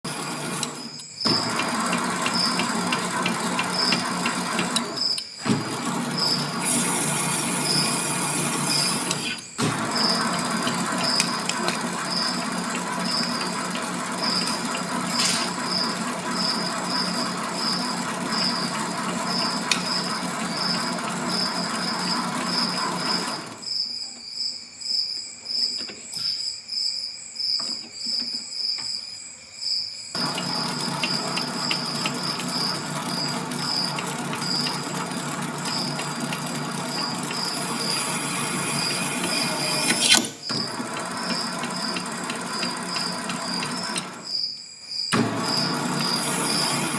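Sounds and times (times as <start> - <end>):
lathe motor humming: 0.0 - 23.6, 30.2 - 44.3, 45.2 - 46.9
crickets chirping: 4.7 - 5.4, 19.3 - 30.2, 39.3 - 46.6.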